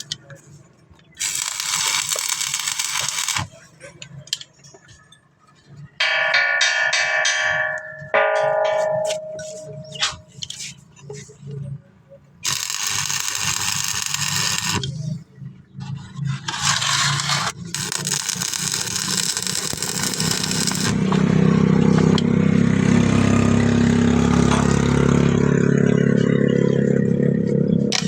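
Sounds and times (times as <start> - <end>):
metal crackling and scraping: 1.1 - 5.1, 12.4 - 15.2, 15.8 - 21.4.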